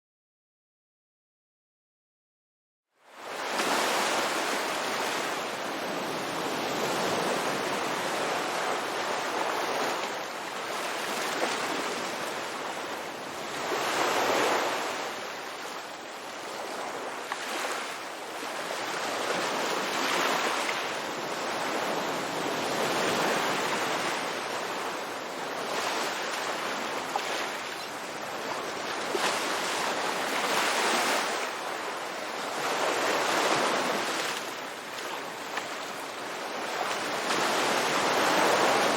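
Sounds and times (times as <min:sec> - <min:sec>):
ocean waves breaking on beach: 0:03.0 - 0:38.9.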